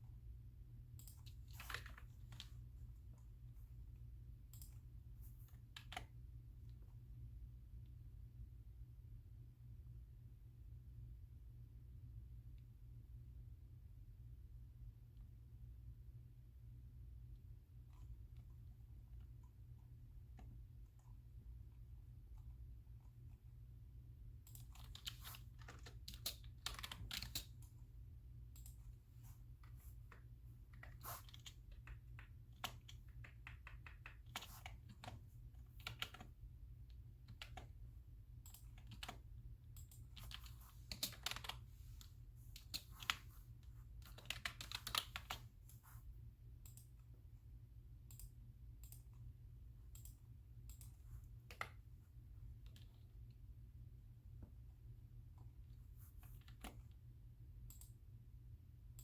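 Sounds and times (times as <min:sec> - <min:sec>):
steady low hum: 0:00.0 - 0:59.0
typing on computer keyboard: 0:05.4 - 0:06.2, 0:24.4 - 0:27.8, 0:29.6 - 0:37.8, 0:38.4 - 0:41.7, 0:42.5 - 0:46.0.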